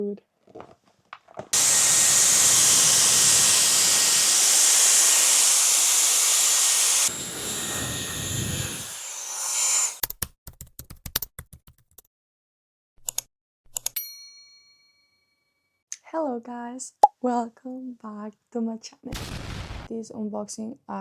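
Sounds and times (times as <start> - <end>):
hair styler blowing air: 1.6 - 10.0.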